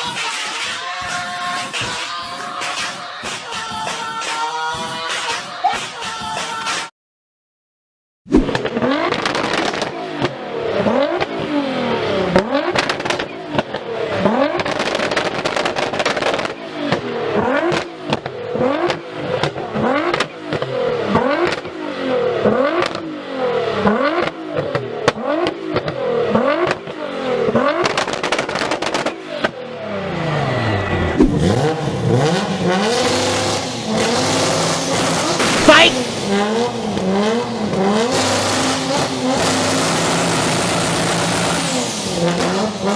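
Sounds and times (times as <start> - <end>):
exhaust pops: 8.4 - 10.4
loud engine revving: 8.6 - 42.9.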